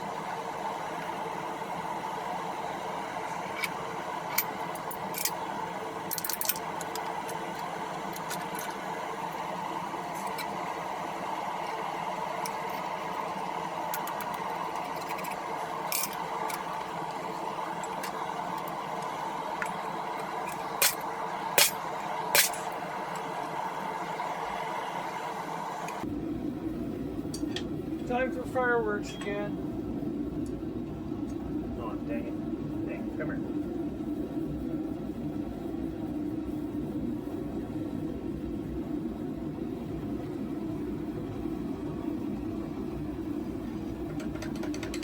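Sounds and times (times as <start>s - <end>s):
forge roaring: 0.0s - 29.0s.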